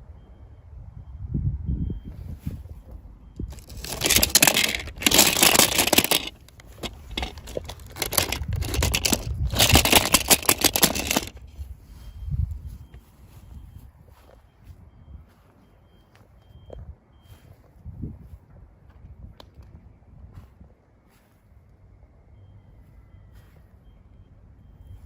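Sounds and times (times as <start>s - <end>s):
packaging tearing and crinkling: 3.5s - 11.4s.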